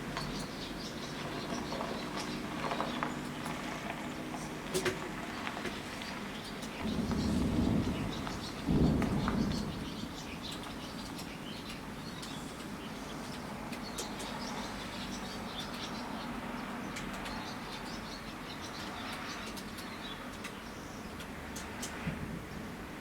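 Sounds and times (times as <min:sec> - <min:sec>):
small birds chirping: 0:00.0 - 0:23.0.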